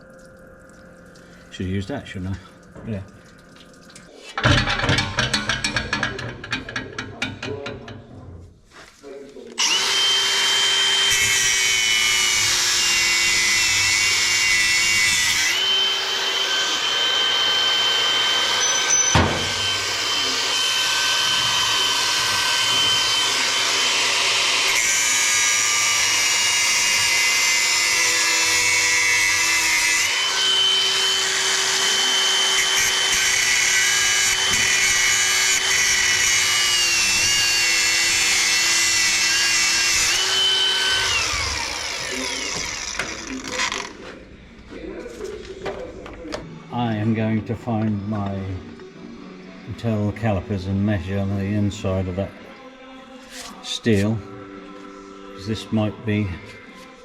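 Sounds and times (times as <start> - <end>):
metal lathe motor whine: 9.6 - 44.0.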